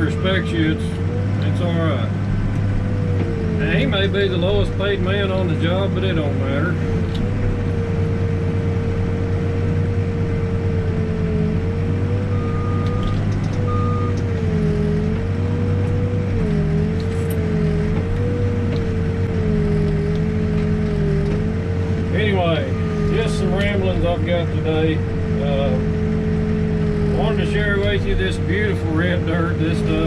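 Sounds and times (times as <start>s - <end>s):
backhoe diesel engine digging: 0.0s - 30.0s
short beeps: 12.3s - 13.1s, 13.7s - 14.2s.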